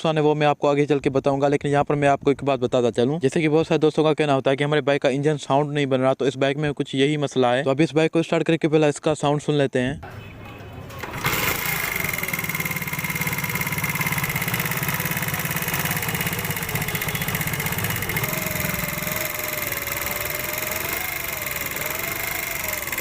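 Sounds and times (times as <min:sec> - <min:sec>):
motorcycle engine idling: 0:11.0 - 0:23.0
valve gear clatter: 0:11.0 - 0:23.0.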